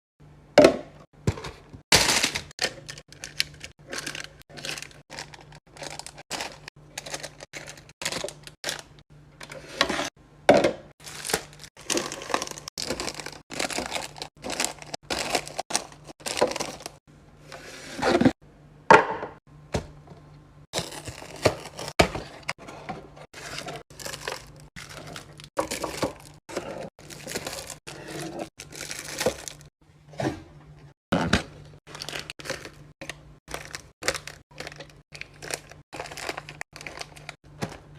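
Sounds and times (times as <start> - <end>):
packaging crinkling and rustling: 1.4 - 9.7, 11.0 - 17.0, 20.8 - 22.4, 23.4 - 29.7, 31.8 - 37.9.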